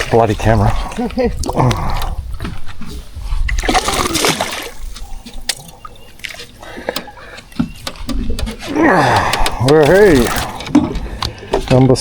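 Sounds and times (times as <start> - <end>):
water splashing: 0.0 - 2.6, 3.5 - 7.4.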